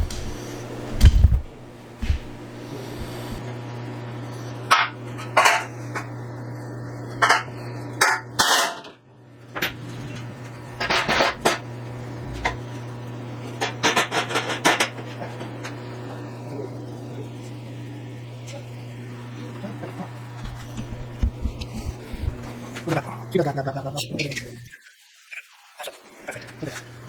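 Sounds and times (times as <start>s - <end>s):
steady low hum: 0.0s - 3.4s, 9.6s - 24.7s.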